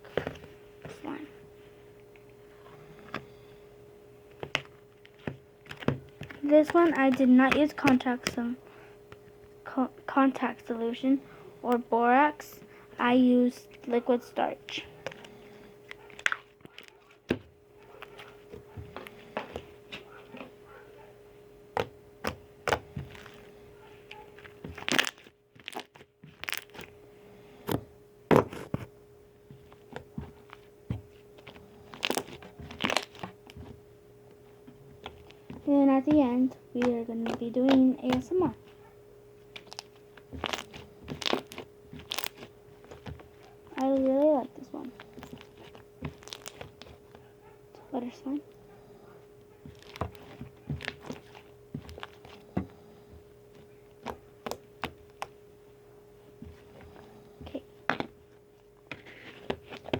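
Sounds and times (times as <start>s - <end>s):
faint steady hum: 0.0s - 59.9s
slime popping and crackling: 4.4s - 8.6s, 15.9s - 17.4s, 21.8s - 23.4s, 24.4s - 27.0s, 29.8s - 33.8s, 35.0s - 38.6s, 39.5s - 47.2s, 49.6s - 52.4s, 54.0s - 55.3s.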